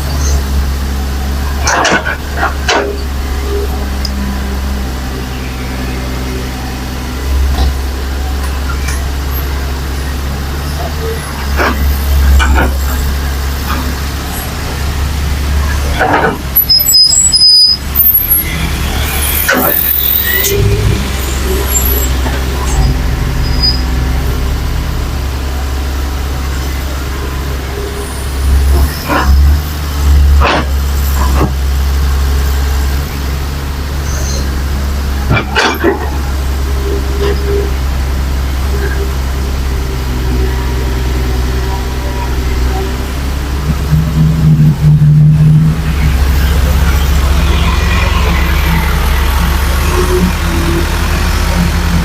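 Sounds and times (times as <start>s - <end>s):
heavy diesel engine droning: 0.0s - 52.0s
high squeaks: 15.6s - 24.4s.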